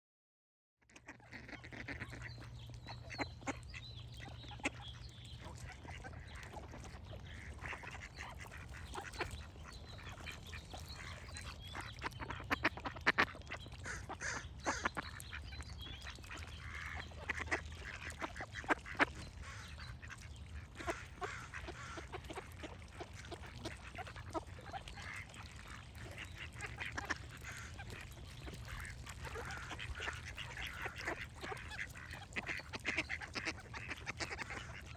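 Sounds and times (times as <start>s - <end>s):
ducks quacking: 0.9s - 34.9s
birds calling: 1.1s - 34.9s.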